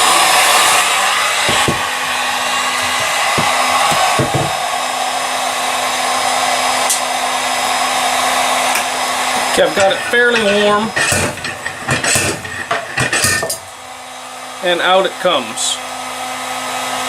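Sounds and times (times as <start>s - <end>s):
heat gun blowing: 0.0s - 14.5s
soft knocks: 1.5s - 1.9s, 2.8s - 4.6s.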